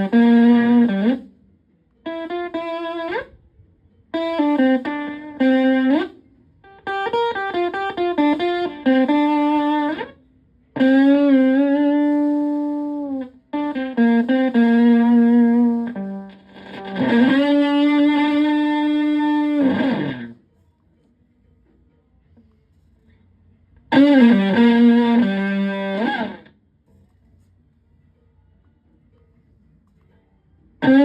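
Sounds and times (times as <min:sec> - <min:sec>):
fuzzed electric guitar lead: 0:00.0 - 0:01.3, 0:02.0 - 0:03.3, 0:04.2 - 0:10.2, 0:10.8 - 0:20.4, 0:23.9 - 0:26.5.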